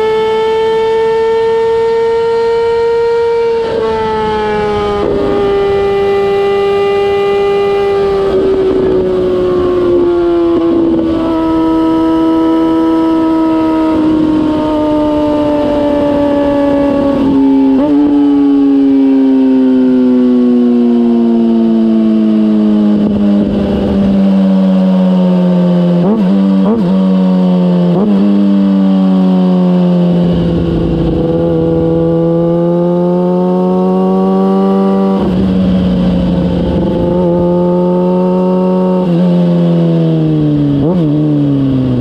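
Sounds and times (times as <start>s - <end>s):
motorcycle engine running loud: 0.0s - 42.0s.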